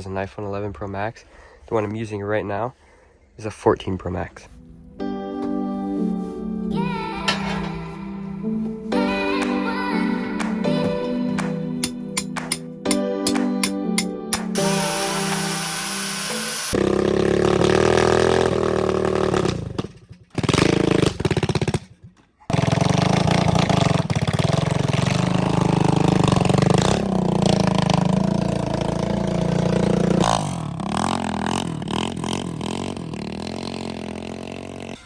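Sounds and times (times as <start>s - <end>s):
motor running: 14.6s - 17.1s.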